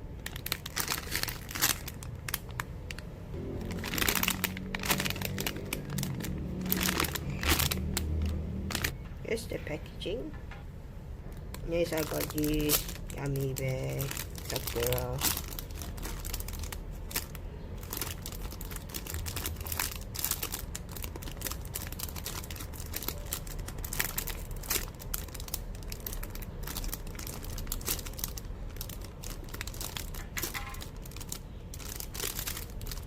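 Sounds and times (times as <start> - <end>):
plastic packaging crinkling: 0.0 - 9.0, 11.3 - 33.0
low hum: 1.8 - 9.3.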